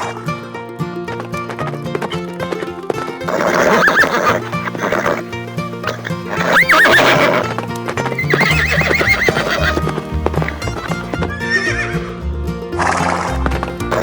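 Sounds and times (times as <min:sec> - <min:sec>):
background music: 0:00.0 - 0:14.0
hoof clip-clops: 0:01.0 - 0:12.1, 0:12.8 - 0:14.0
horse neighing: 0:03.2 - 0:12.1.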